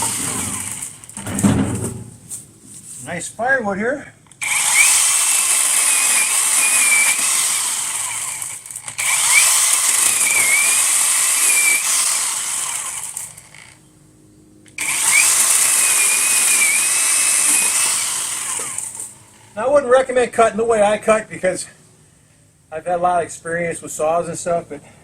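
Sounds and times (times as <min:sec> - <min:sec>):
chainsaw cutting wood: 0:00.0 - 0:01.5, 0:04.3 - 0:13.8, 0:14.8 - 0:19.6.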